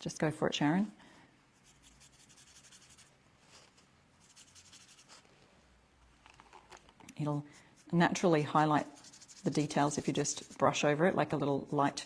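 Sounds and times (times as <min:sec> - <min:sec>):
paintbrush strokes on cardboard: 0:01.5 - 0:05.3, 0:07.5 - 0:12.0.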